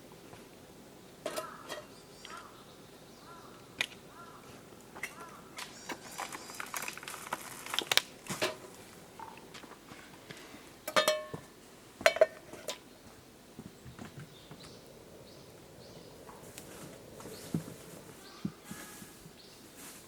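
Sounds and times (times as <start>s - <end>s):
cookware clicks and knocks: 10.9s - 11.4s, 12.1s - 12.8s.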